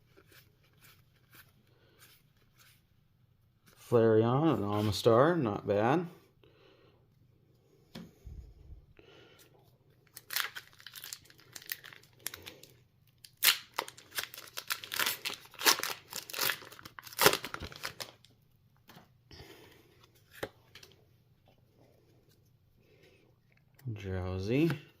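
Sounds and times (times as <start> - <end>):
foil wrapper tearing and crinkling: 10.1 - 18.2.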